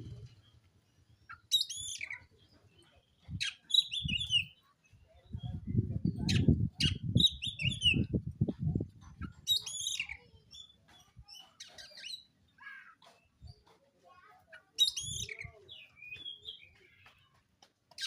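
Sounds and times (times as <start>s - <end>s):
bird singing whistled phrases: 3.4s - 4.6s, 6.3s - 8.1s, 14.8s - 16.7s.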